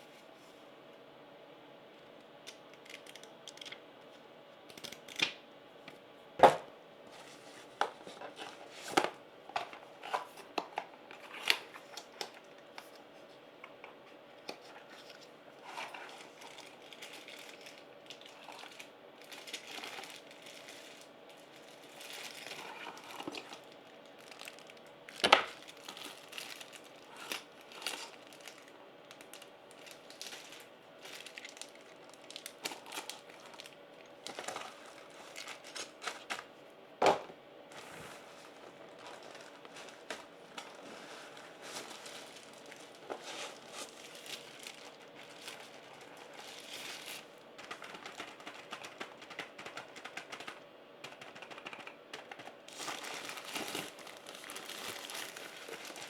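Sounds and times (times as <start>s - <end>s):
plastic and paper crinkling: 7.1s - 36.5s, 37.7s - 56.0s
packaging tearing: 15.7s - 36.5s, 38.9s - 56.0s.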